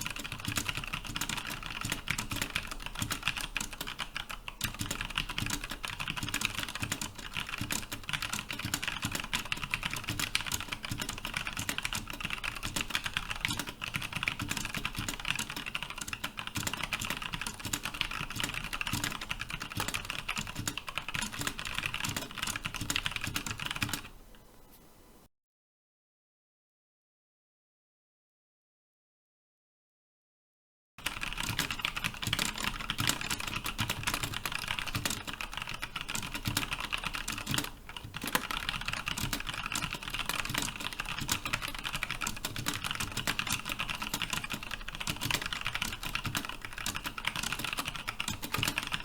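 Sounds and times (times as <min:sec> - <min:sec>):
fast mechanical keyboard typing: 0:00.0 - 0:24.1, 0:31.0 - 0:49.0.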